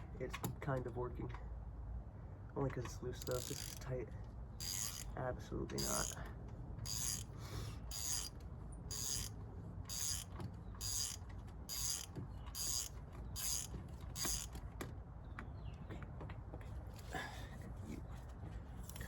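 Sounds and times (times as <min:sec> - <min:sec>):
socket ratchet clicking: 0:03.2 - 0:03.9, 0:04.6 - 0:05.2, 0:05.8 - 0:06.2, 0:06.8 - 0:14.7.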